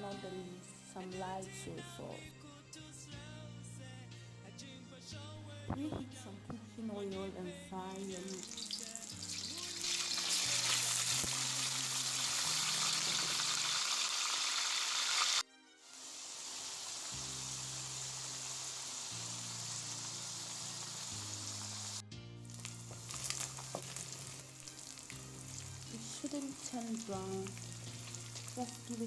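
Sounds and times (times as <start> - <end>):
soft background music: 0.0 - 29.0
meat sizzling in oil: 8.0 - 29.0.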